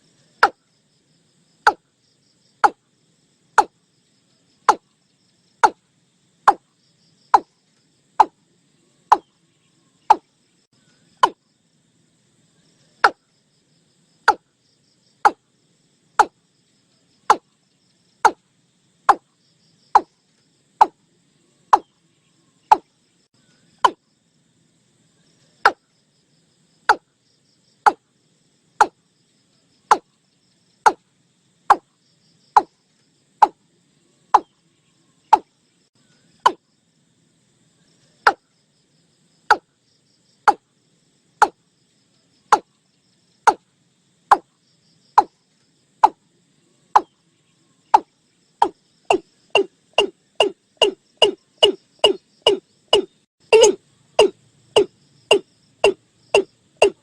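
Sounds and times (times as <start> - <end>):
faint insect chirring: 0.0 - 57.0
bird calling sharp notes: 49.1 - 57.0.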